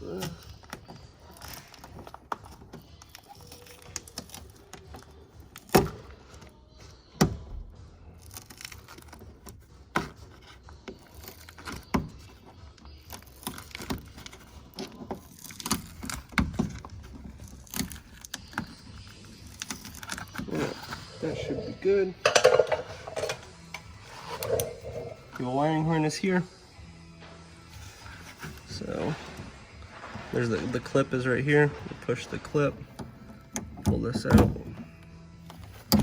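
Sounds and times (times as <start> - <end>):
hand tools and plastic parts knocking: 8.2 - 25.5, 28.0 - 36.0.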